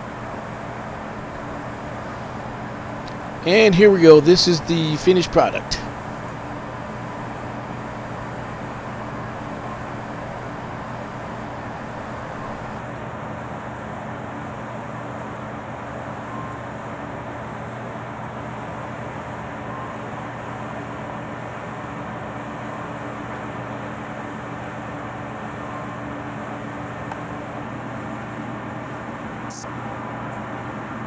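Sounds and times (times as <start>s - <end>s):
steady low hum: 0.0s - 12.8s.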